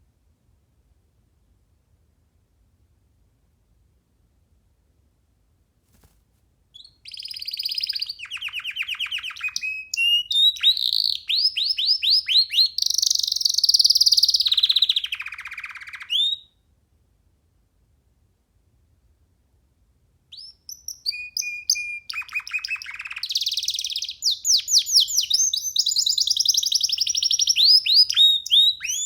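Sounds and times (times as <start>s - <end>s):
canary singing: 6.8s - 16.5s, 20.3s - 29.0s.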